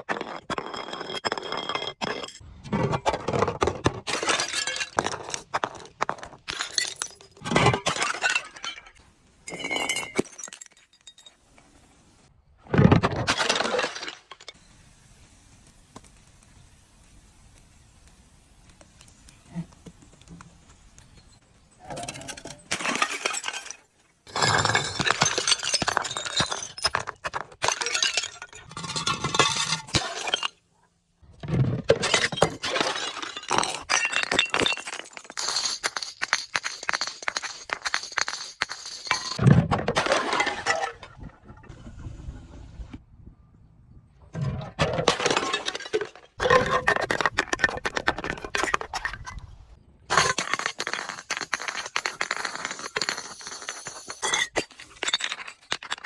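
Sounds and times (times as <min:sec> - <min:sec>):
glass bottles being crushed: 0:00.0 - 0:11.5, 0:12.8 - 0:14.6, 0:21.9 - 0:30.6, 0:31.4 - 0:41.6, 0:44.4 - 0:49.4, 0:50.1 - 0:56.0.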